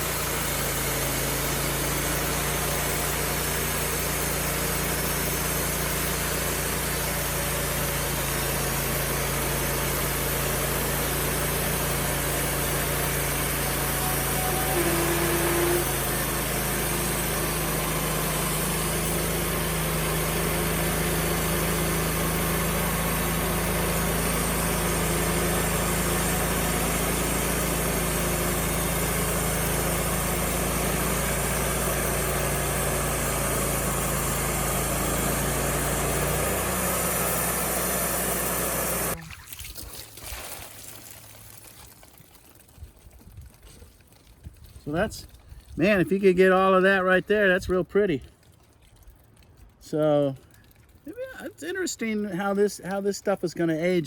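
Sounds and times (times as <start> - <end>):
gas engine running: 0.0 - 39.3
brief higher-pitched tone: 13.8 - 15.9.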